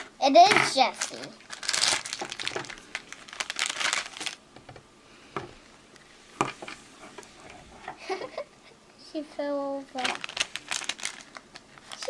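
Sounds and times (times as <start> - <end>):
plastic packaging crinkling: 0.8 - 4.4, 10.0 - 12.0.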